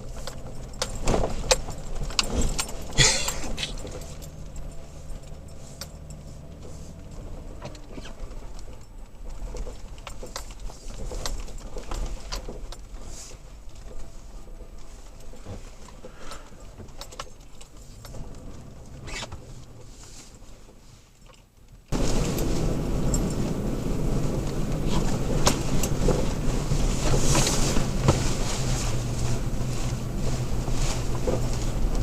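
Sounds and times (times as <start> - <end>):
pickup engine hum: 0.0 - 10.0, 21.9 - 32.0
rattles and knocks from cab: 0.0 - 19.6, 21.9 - 32.0.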